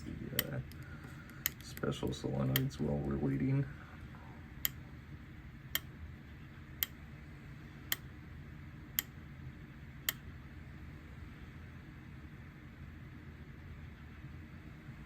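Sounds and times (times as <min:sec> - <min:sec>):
low steady hum: 0:00.0 - 0:15.0
solenoid clicks: 0:00.3 - 0:03.2.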